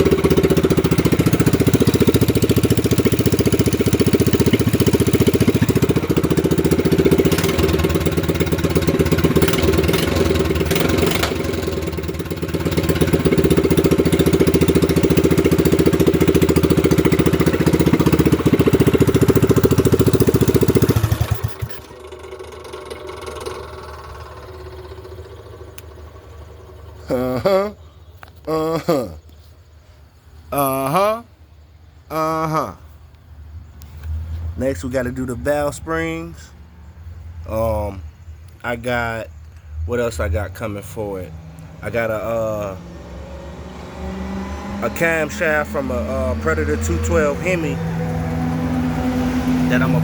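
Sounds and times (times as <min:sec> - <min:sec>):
mini bike engine running: 0:00.0 - 0:27.3, 0:41.4 - 0:50.0.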